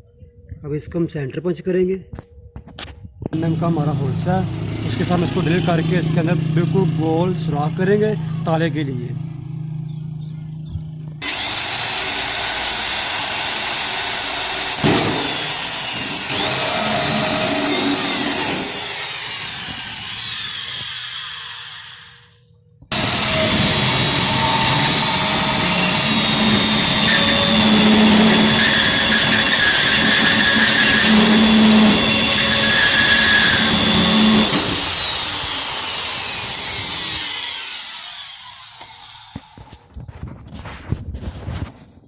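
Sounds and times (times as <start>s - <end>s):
drill hole saw cutting metal: 3.4s - 6.2s, 11.2s - 39.8s.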